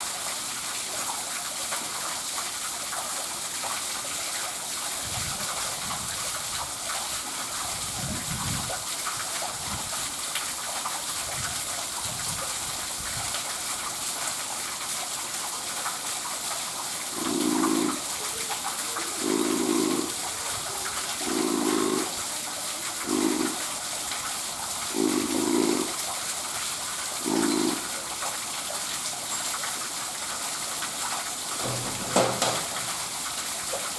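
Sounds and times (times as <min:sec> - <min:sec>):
rushing water: 0:00.0 - 0:33.9
seal snore-like sounds: 0:17.1 - 0:18.1, 0:19.1 - 0:22.3, 0:22.9 - 0:23.7, 0:24.9 - 0:26.0, 0:27.2 - 0:27.9.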